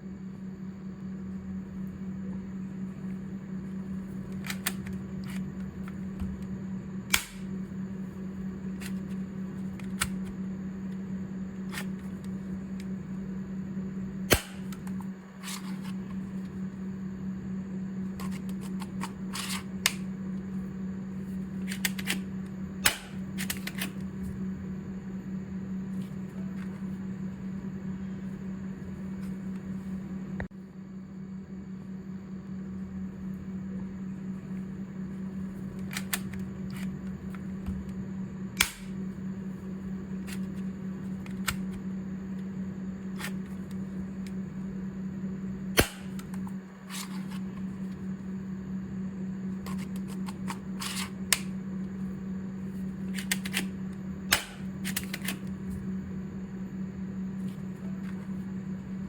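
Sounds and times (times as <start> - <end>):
steady low hum: 0.0 - 59.0
toy pistol clicks and snaps: 7.1 - 7.5, 38.6 - 39.0.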